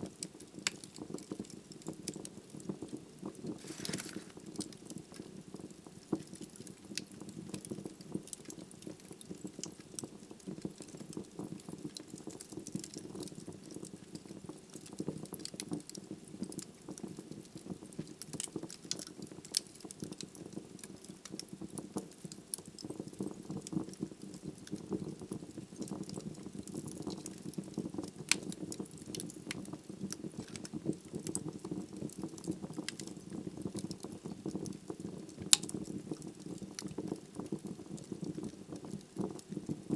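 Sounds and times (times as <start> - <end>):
wood crackling and popping: 0.0 - 39.9.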